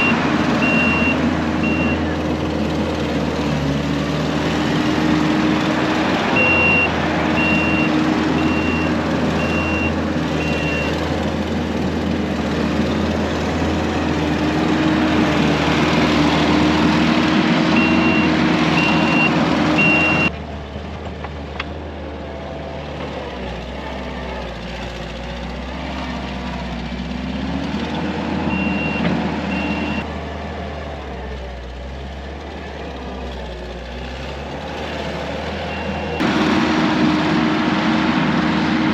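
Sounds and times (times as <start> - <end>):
reversing alarm beeping: 0.0 - 2.1, 6.4 - 11.0, 17.8 - 20.3, 28.5 - 30.0
diesel engine running under work: 0.0 - 38.9.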